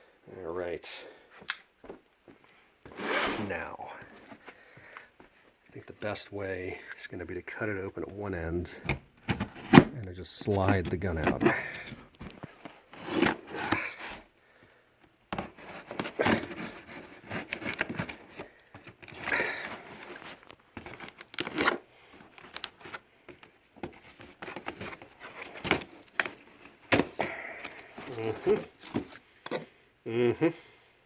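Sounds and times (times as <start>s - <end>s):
cardboard box ripping: 13.0s - 14.2s, 15.4s - 21.8s.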